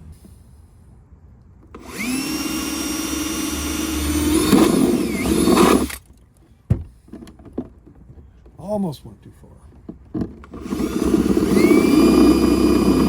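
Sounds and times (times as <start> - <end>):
power drill boring a hole: 1.8 - 6.0, 10.6 - 13.0.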